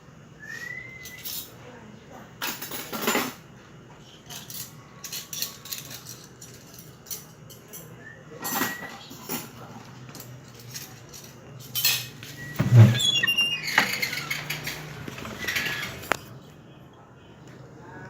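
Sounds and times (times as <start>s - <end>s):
dishes and utensils clattering: 2.4s - 3.4s, 4.3s - 16.2s
high rising squeak: 12.3s - 16.2s.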